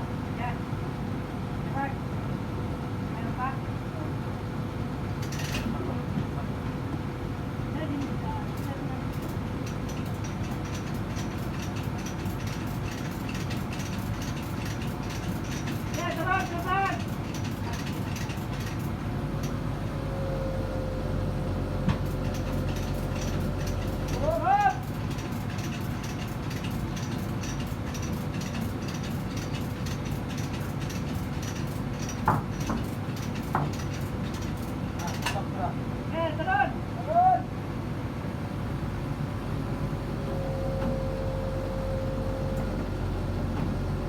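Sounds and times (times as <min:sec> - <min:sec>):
rapid clicking and rattling: 0:08.5 - 0:19.6, 0:21.9 - 0:35.4
crane machinery running: 0:08.5 - 0:36.1, 0:38.2 - 0:44.0.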